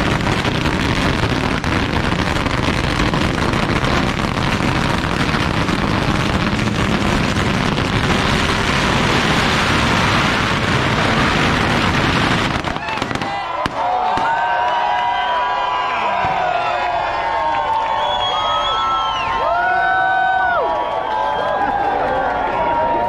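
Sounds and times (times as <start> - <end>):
string of firecrackers crackling: 0.0 - 14.4.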